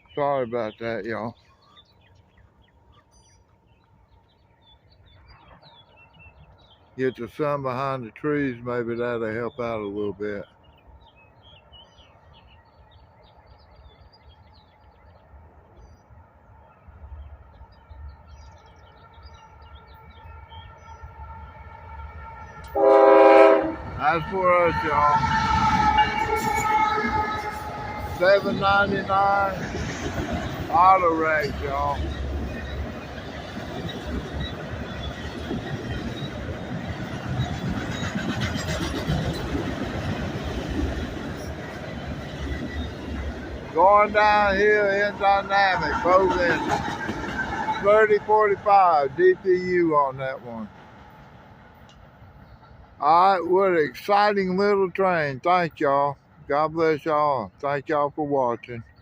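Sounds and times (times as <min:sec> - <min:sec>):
birds chirping: 0:00.0 - 0:59.0
diesel train rumble: 0:14.0 - 0:59.0.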